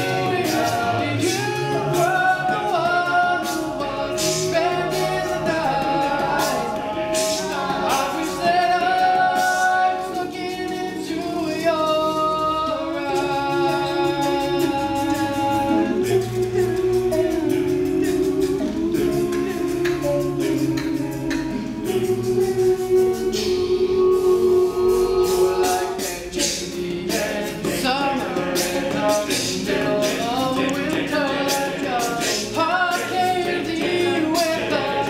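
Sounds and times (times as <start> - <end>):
male a cappella group singing: 0.0 - 35.0
crisp percussive ticks: 27.6 - 32.6.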